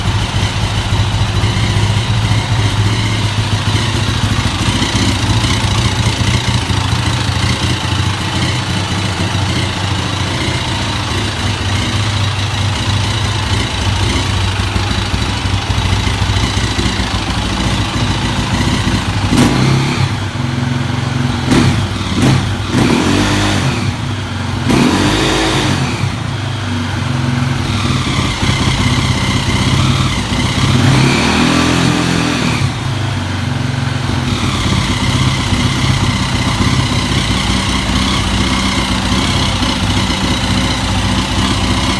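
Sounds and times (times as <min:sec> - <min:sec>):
motorcycle engine idling and revving: 0:00.0 - 0:41.9.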